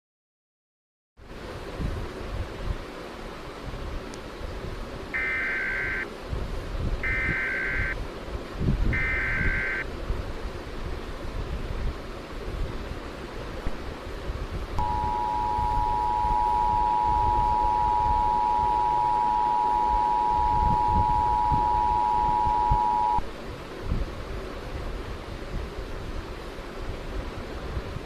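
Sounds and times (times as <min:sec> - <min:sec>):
background hiss: 0:01.2 - 0:28.0
two-tone alert tone: 0:05.2 - 0:06.0, 0:07.0 - 0:08.0, 0:09.0 - 0:09.8, 0:14.8 - 0:23.2.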